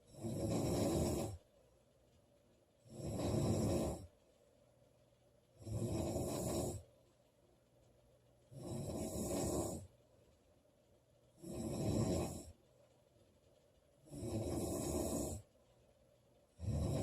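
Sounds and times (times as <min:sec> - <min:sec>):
woman snoring loudly: 0:00.1 - 0:01.4, 0:02.9 - 0:04.0, 0:05.6 - 0:06.8, 0:08.5 - 0:09.9, 0:11.4 - 0:12.5, 0:14.1 - 0:15.4, 0:16.6 - 0:17.0.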